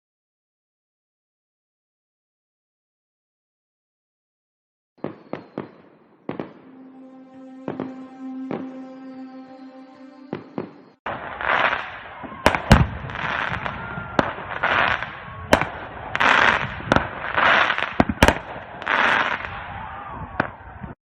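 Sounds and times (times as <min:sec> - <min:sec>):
fireworks sharp bangs: 0:05.0 - 0:06.7, 0:11.1 - 0:19.6.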